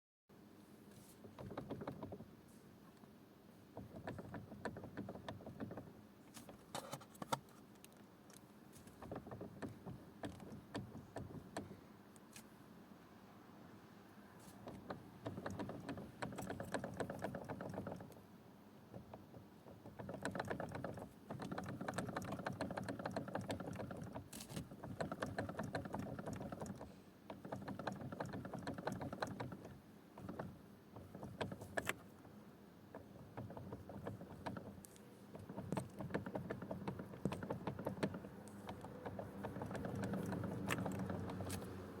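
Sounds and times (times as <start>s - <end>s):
steering column rattling knocks: 1.2s - 2.3s, 3.8s - 5.9s, 9.0s - 11.8s, 14.6s - 18.2s, 18.9s - 41.8s.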